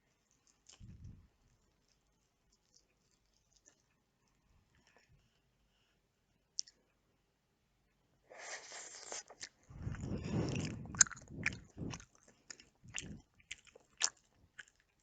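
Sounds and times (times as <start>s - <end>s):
biting and chewing: 0.1s - 5.2s, 8.8s - 15.0s
wet mouth clicks: 9.4s - 14.2s.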